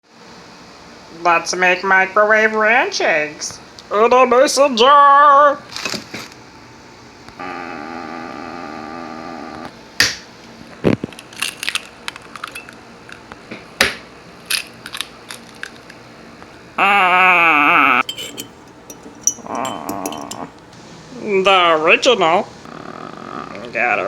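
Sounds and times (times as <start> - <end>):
eggs cracked in a glass jar: 11.2 - 12.8, 18.0 - 20.5.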